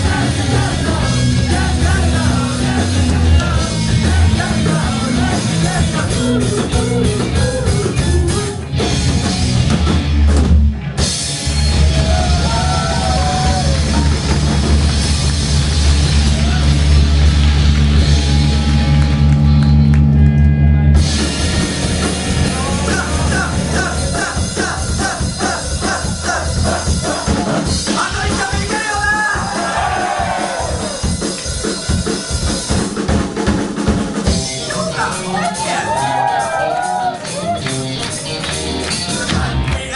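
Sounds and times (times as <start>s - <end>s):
person singing: 0.0s - 8.6s, 22.4s - 28.8s
drums: 0.0s - 39.9s
rock band playing: 0.0s - 39.9s.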